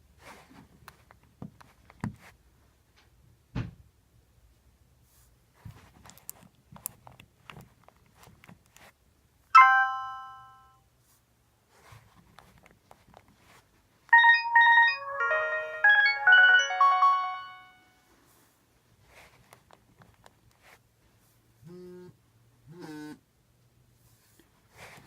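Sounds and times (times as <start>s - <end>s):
quick phone melody: 9.6s - 10.7s, 14.1s - 18.0s
bell-like phone chime: 9.6s - 10.8s, 14.1s - 18.0s.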